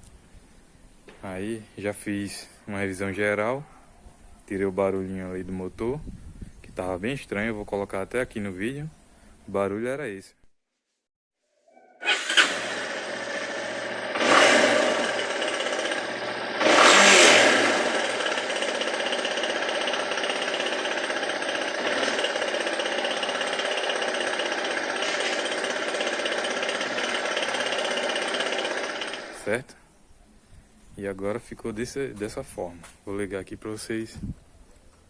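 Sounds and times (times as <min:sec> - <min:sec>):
motorcycle engine with mechanical noise: 0:12.0 - 0:29.6.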